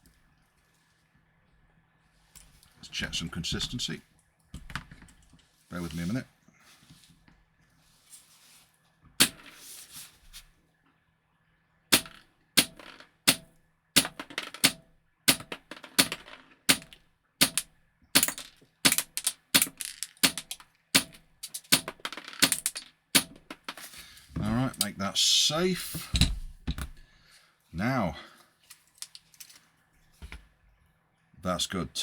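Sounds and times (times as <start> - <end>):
faint handling noise: 3.6 - 10.9, 19.7 - 25.0, 28.3 - 30.7.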